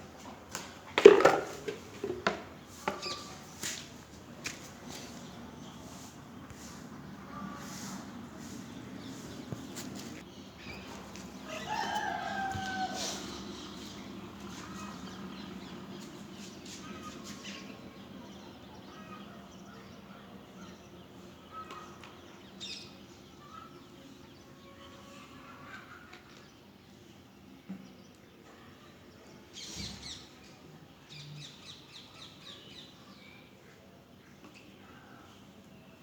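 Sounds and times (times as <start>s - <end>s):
chicken crowing call: 11.4s - 13.6s.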